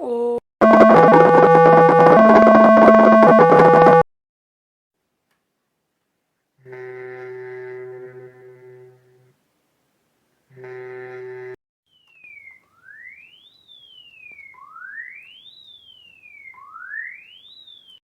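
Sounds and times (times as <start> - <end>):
buzzy electronic tone: 0.6 - 4.0, 6.6 - 9.3, 10.5 - 11.6
synthetic siren tone sweeping: 0.6 - 4.0, 11.9 - 18.0.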